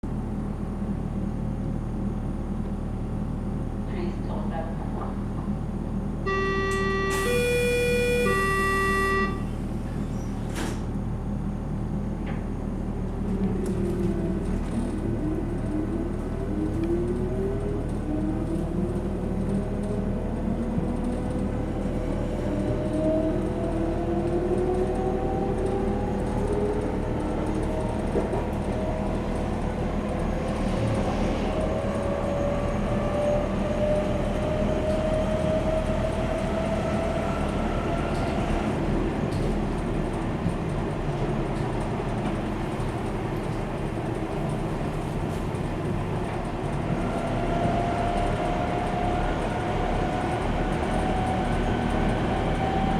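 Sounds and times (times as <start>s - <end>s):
train running rumble: 0.1s - 52.9s
electric train drive whine: 6.0s - 10.0s.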